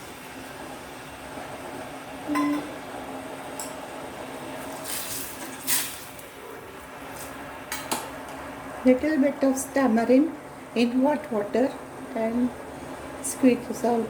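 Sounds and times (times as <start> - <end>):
vessel clinking against pot: 2.3 - 2.7.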